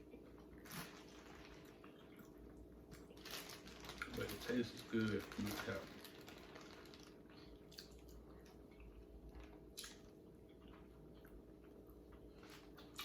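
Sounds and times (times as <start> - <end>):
soft chewing and squishing: 0.0 - 13.0.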